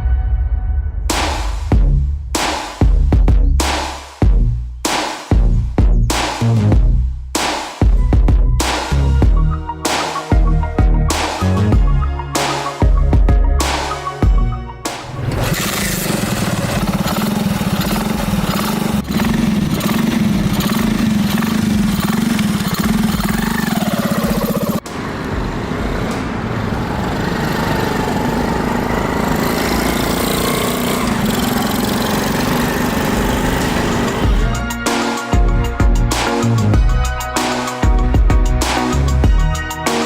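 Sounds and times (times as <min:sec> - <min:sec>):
motorcycle engine running: 0:15.0 - 0:34.6.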